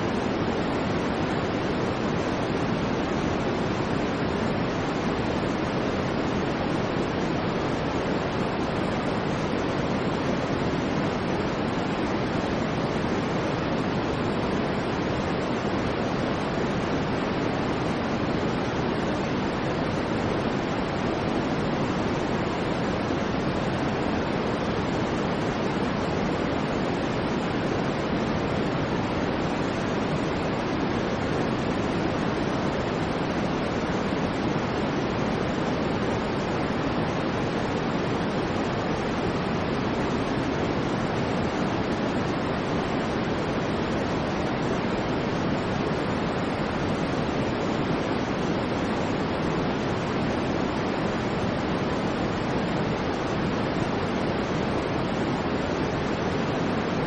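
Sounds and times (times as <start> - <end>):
steady white noise hiss: 0.0 - 57.0.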